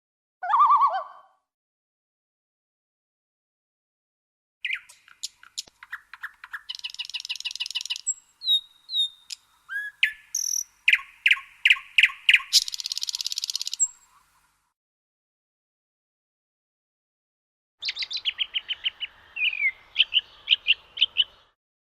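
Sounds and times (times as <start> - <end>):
songbird singing trills: 4.6 - 14.5, 17.8 - 21.6.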